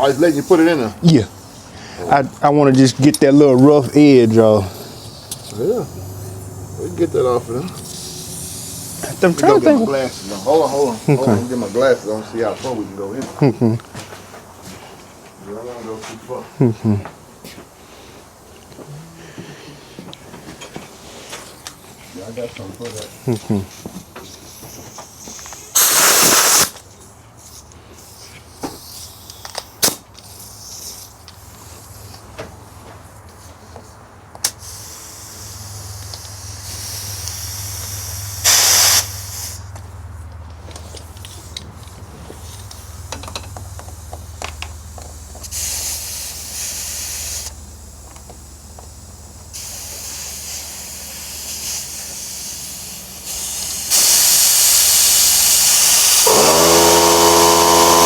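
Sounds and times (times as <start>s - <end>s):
compressed air hissing: 0.0s - 13.1s, 22.9s - 26.8s, 27.5s - 32.2s, 34.4s - 58.0s.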